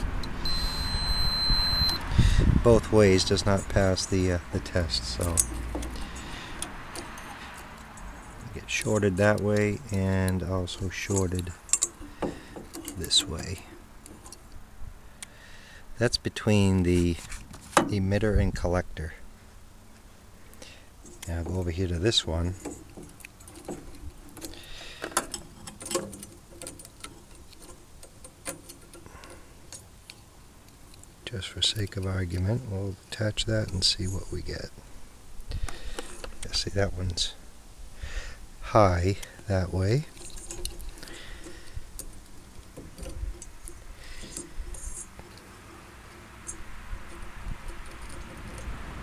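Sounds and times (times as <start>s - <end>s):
small metal parts clicking: 4.6s - 14.6s, 22.4s - 31.1s, 39.1s - 49.0s.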